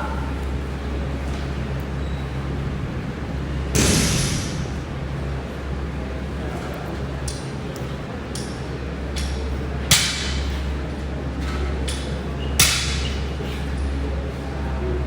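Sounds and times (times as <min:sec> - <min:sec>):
steady low hum: 0:00.0 - 0:11.4
sharp knocks: 0:03.8 - 0:05.1.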